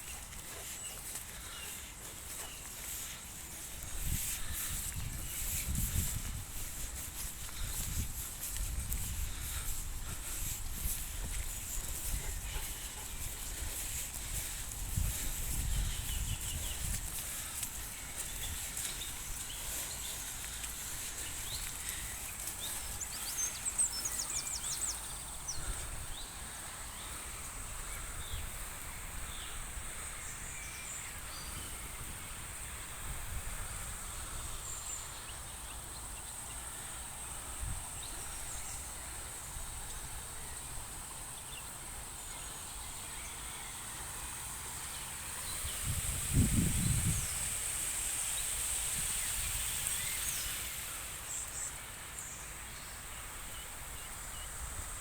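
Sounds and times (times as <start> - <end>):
creek rushing: 43.1 - 55.0.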